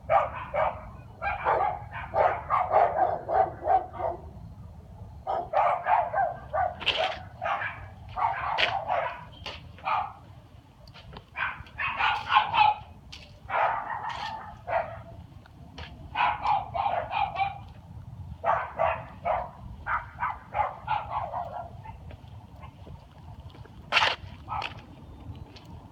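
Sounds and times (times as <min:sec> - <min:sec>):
dog barking: 0:00.1 - 0:04.3, 0:05.2 - 0:10.2, 0:11.3 - 0:12.9, 0:13.5 - 0:15.1, 0:16.1 - 0:17.7, 0:18.4 - 0:22.8, 0:24.5 - 0:24.8.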